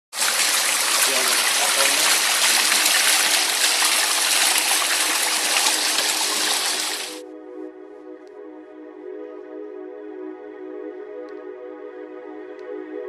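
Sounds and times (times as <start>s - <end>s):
water rushing: 0.1s - 7.2s.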